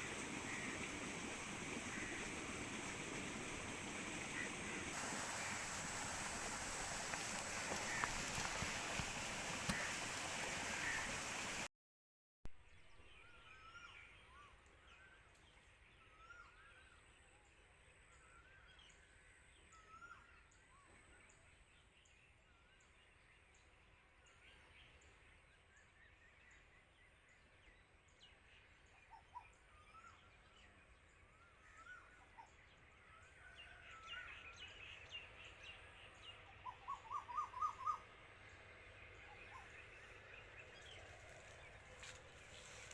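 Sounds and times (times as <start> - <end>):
birds chirping: 0.0 - 11.7, 34.7 - 42.9.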